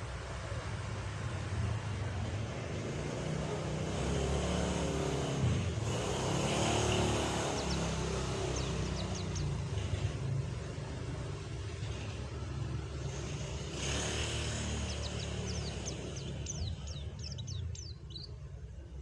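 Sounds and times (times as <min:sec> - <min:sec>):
high bird chirps: 0:06.8 - 0:09.7, 0:13.8 - 0:18.4.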